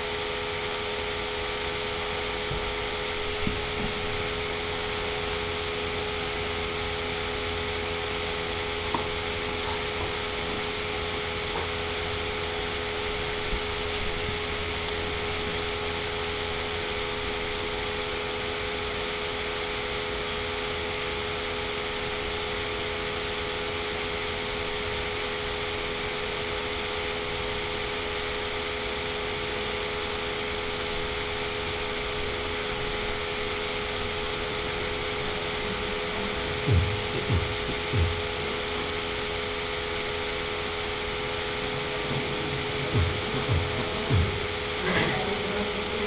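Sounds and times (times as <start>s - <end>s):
computer cooling fan running: 0.0s - 46.0s
soft low thumps: 36.6s - 38.4s, 42.0s - 44.6s.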